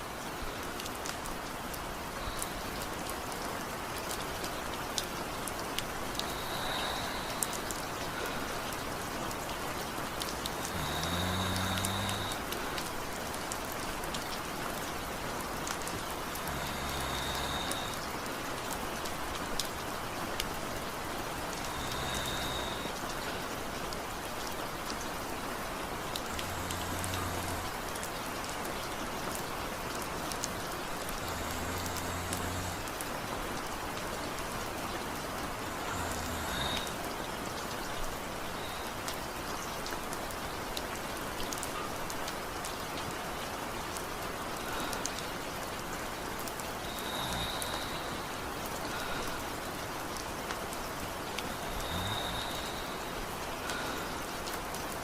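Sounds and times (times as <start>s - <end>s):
steady rain falling: 0.0s - 55.0s
man snoring lightly: 6.2s - 8.4s, 10.5s - 12.5s, 16.2s - 18.1s, 21.5s - 23.0s, 26.2s - 27.9s, 30.4s - 33.0s, 35.5s - 37.2s, 46.8s - 49.4s, 51.5s - 54.0s.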